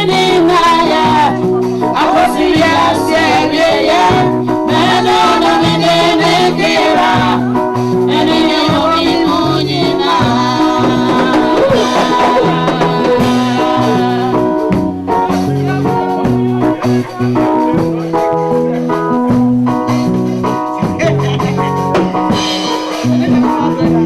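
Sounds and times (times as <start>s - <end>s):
gospel singing voices: 0.0s - 17.9s
band playing: 0.0s - 24.0s
bass line: 0.0s - 24.0s.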